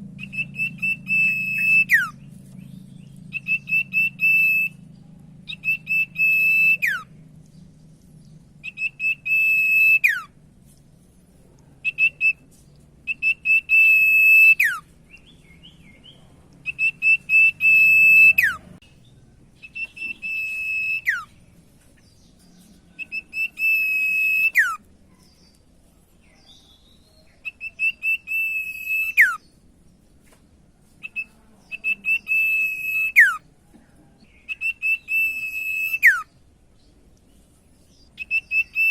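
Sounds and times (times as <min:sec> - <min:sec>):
bird singing whistled phrases: 0:00.2 - 0:02.2, 0:03.3 - 0:04.8, 0:05.5 - 0:07.2, 0:08.6 - 0:10.3, 0:11.8 - 0:12.4, 0:13.1 - 0:18.6, 0:19.6 - 0:21.4, 0:22.9 - 0:24.8, 0:26.4 - 0:29.5, 0:31.0 - 0:33.4, 0:34.3 - 0:36.4, 0:37.9 - 0:38.9.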